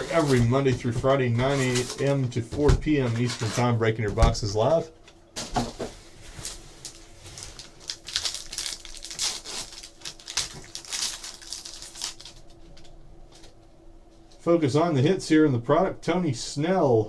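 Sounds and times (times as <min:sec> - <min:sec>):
packaging crinkling and tearing: 0:00.0 - 0:02.2, 0:05.8 - 0:13.6.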